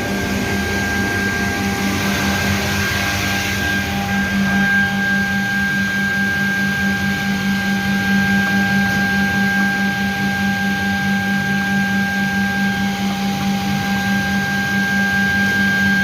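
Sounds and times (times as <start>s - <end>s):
machine motor hum: 0.0s - 10.2s
high whine: 0.0s - 16.0s.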